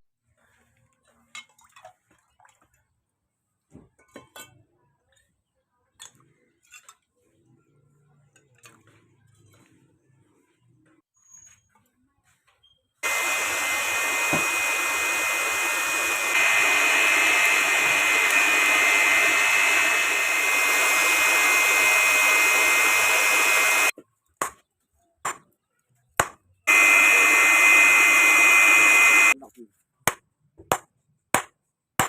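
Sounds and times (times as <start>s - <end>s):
shop machine whining and hissing: 13.0s - 23.9s, 26.7s - 29.4s.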